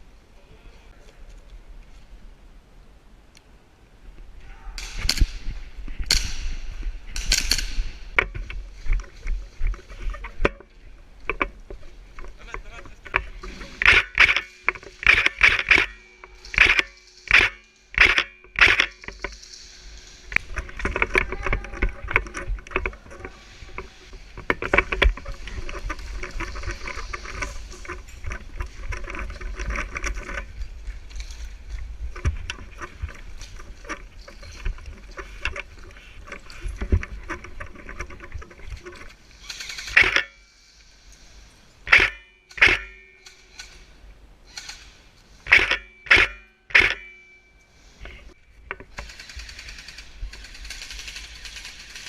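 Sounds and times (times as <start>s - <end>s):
camera and gear rustling: 5.0s - 40.3s, 41.9s - 43.8s, 45.4s - 47.1s.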